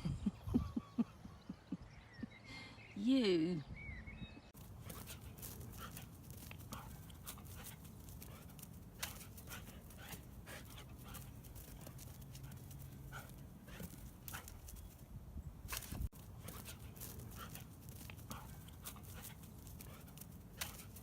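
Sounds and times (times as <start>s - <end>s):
dog panting: 4.6s - 14.8s, 16.2s - 21.0s.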